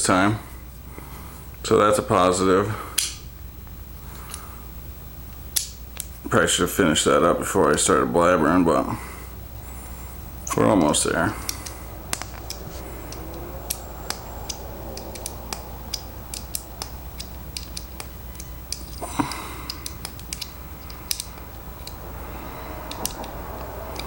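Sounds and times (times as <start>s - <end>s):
small metal tool parts clicking: 10.9s - 22.1s, 22.9s - 24.0s.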